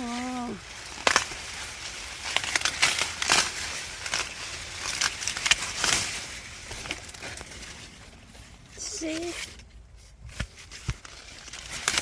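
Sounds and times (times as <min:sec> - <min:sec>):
dry corn leaves rustling: 0:00.0 - 0:12.0
corn ear snapping off stalk: 0:00.9 - 0:01.5, 0:02.2 - 0:06.2, 0:10.4 - 0:12.0.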